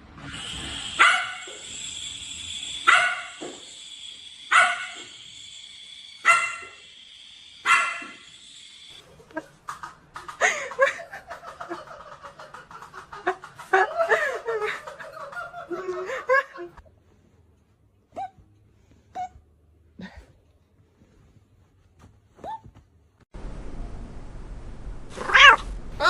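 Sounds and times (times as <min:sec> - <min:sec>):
steady high-pitched tone: 0:00.2 - 0:09.0
dog barking: 0:00.9 - 0:01.6, 0:02.8 - 0:03.5, 0:04.5 - 0:05.1, 0:06.2 - 0:06.8, 0:07.6 - 0:08.3.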